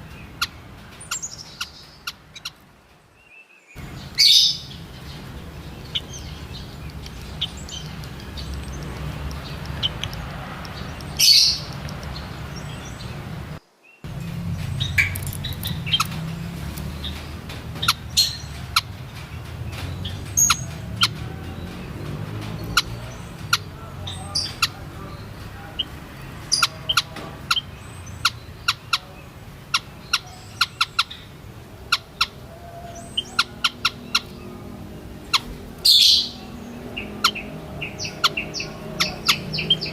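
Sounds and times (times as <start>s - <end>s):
bird chirping calls: 0.0s - 39.9s
steady low hum: 3.8s - 30.0s.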